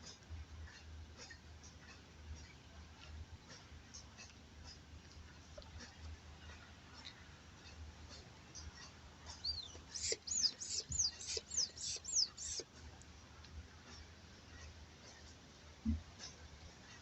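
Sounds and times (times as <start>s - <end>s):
bird chirping: 9.2s - 12.6s.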